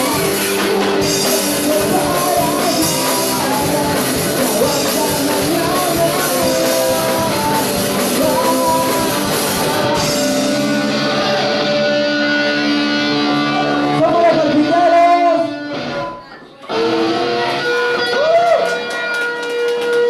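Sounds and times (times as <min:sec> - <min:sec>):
person singing: 0:00.0 - 0:15.6
rock song with guitar and drums: 0:00.0 - 0:20.0.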